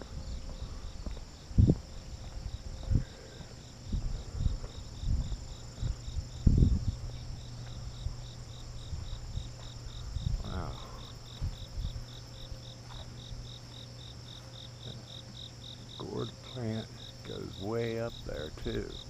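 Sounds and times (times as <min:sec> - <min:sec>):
cricket chirping: 0:00.0 - 0:19.0
footsteps thumping: 0:04.6 - 0:06.6.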